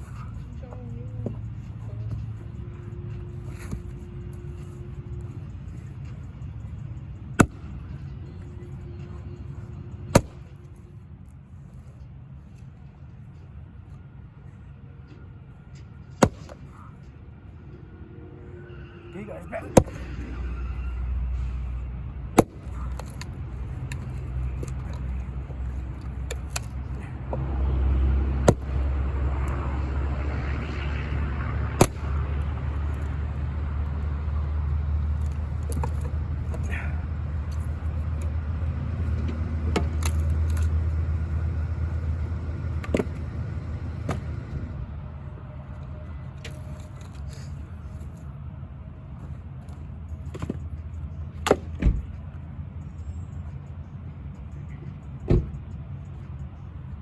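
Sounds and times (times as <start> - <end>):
steady low rumble: 0.0 - 57.0
wood chopping knocks: 10.1 - 10.4, 16.2 - 16.6, 28.4 - 28.8, 51.4 - 52.0.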